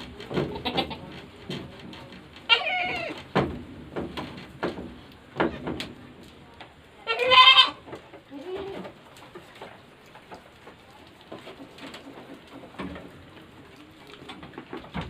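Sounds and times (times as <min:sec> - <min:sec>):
goats bleating: 0:07.1 - 0:07.8.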